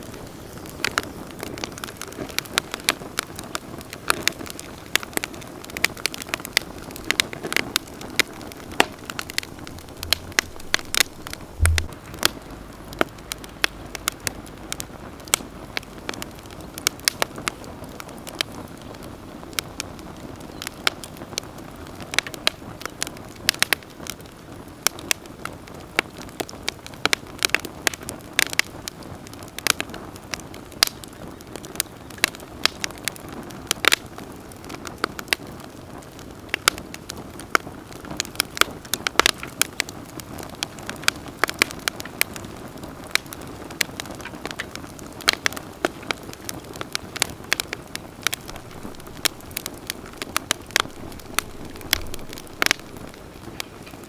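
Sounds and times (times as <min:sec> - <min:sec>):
campfire crackles and pops: 0:00.0 - 0:54.0
low rush of flame: 0:04.5 - 0:18.9, 0:46.1 - 0:54.0.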